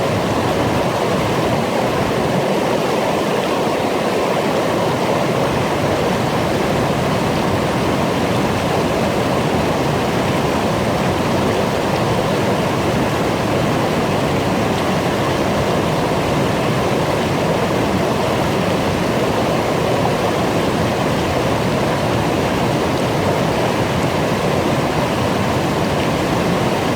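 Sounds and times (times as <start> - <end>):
brook babbling over rocks: 0.0 - 26.9.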